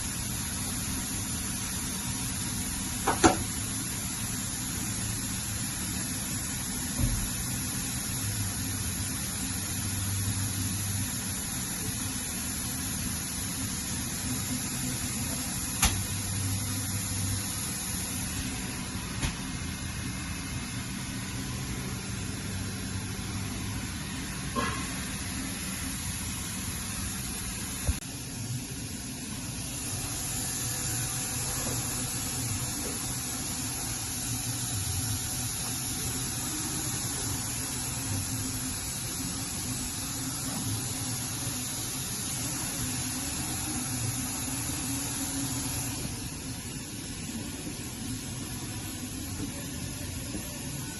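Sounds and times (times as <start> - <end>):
machining center humming: 0.0 - 50.9.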